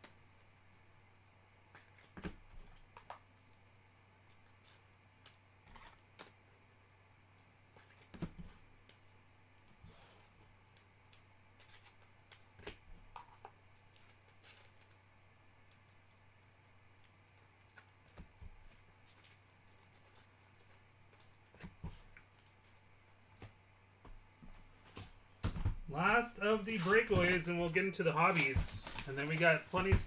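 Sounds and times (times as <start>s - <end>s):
short rustles: 24.5s - 30.0s.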